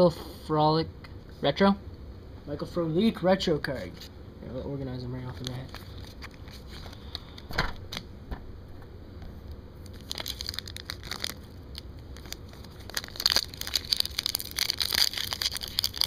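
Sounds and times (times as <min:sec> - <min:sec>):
card pack wrapper crinkling: 0:05.2 - 0:08.0, 0:09.8 - 0:16.0.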